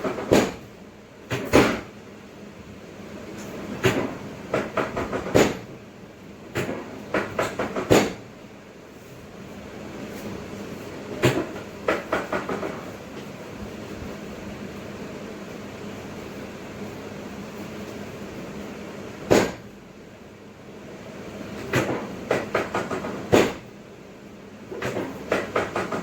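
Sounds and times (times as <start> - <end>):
quick sharp clicks and knocks: 3.8 - 5.7, 6.6 - 8.2, 24.7 - 26.0.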